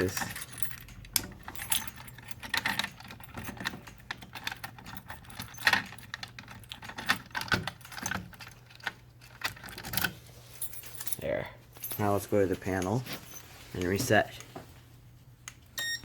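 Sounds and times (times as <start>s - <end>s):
keys jangling: 0.0s - 12.2s
key clicking in lock: 0.2s - 10.0s.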